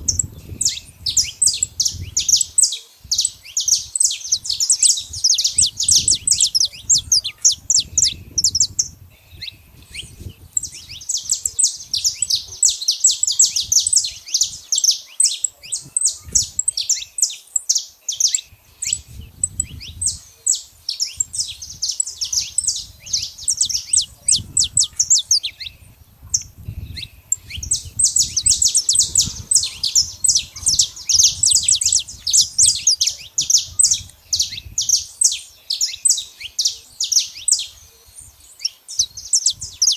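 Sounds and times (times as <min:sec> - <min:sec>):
finch singing high chirps: 0:00.0 - 0:39.9.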